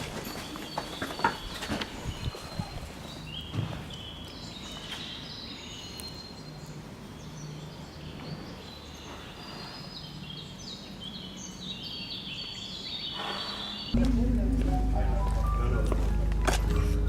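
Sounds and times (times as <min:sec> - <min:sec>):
birds chirping: 0:00.0 - 0:17.0
low background hum: 0:14.0 - 0:17.0.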